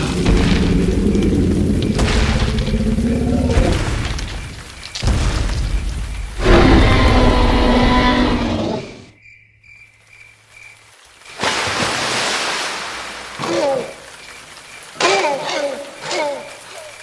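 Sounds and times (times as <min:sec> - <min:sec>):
deep bellowing creature call: 0:00.0 - 0:04.1, 0:06.4 - 0:09.1
rushing noise: 0:00.0 - 0:05.3.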